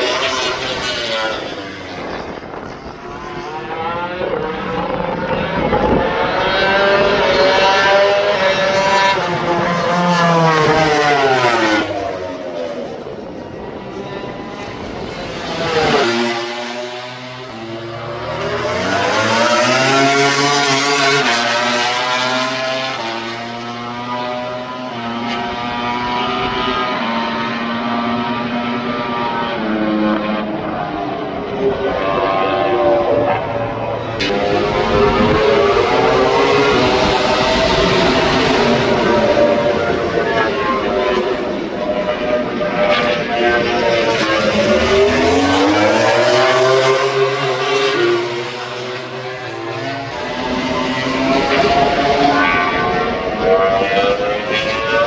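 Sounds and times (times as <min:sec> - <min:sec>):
racing motorcycle engine revving: 0:00.0 - 0:55.0
motorcycle engine at high revs: 0:34.2 - 0:55.0.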